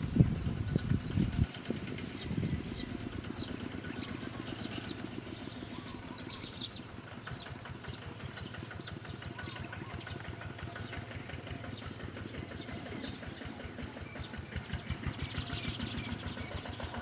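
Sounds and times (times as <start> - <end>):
steady low rumble: 0.0 - 8.2
small birds chirping: 0.0 - 17.0.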